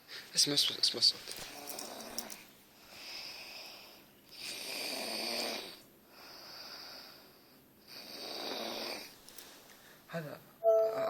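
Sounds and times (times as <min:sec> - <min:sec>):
man snoring: 0:04.5 - 0:05.8, 0:08.0 - 0:09.1.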